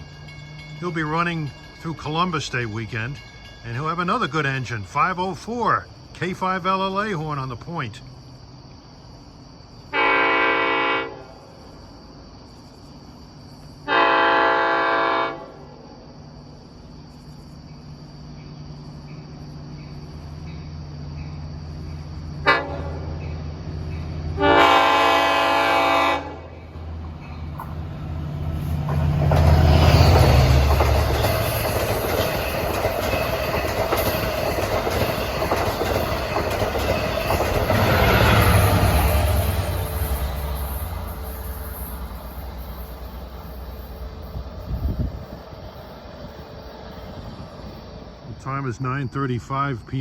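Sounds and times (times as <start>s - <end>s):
train engine and wheel rumble: 0.0s - 50.0s
locomotive air horn blasts: 9.9s - 11.3s, 13.9s - 15.6s, 22.4s - 23.0s, 24.4s - 26.5s.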